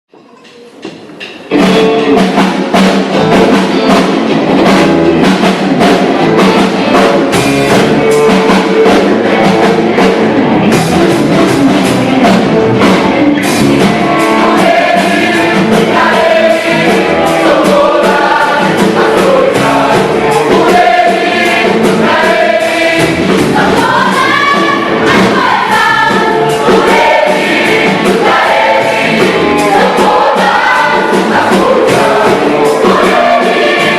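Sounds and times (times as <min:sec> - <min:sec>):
drums steady beat: 0:00.2 - 0:33.9
gospel choir singing: 0:13.8 - 0:33.9.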